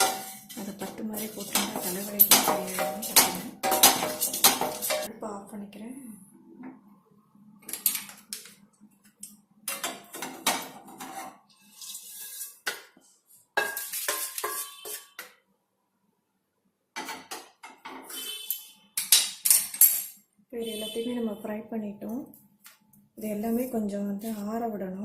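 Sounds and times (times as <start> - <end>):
metal utensil scraping a pan: 0.0 - 5.1, 9.7 - 12.8, 13.6 - 15.3.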